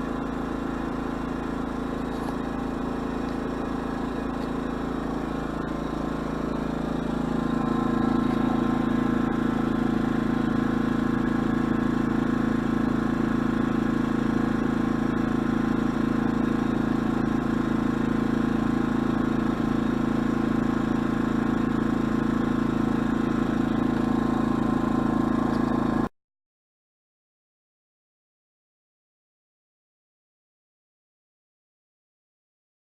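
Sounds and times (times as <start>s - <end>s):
generator engine running: 0.0s - 26.1s.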